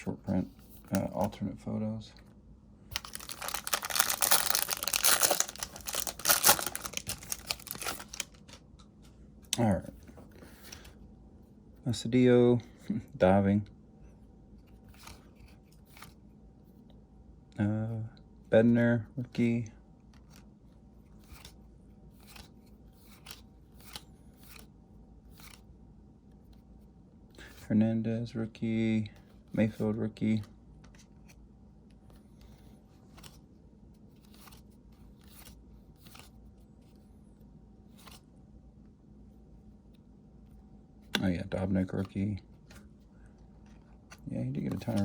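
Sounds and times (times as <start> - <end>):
wrapper crinkling and tearing: 2.9 - 8.6.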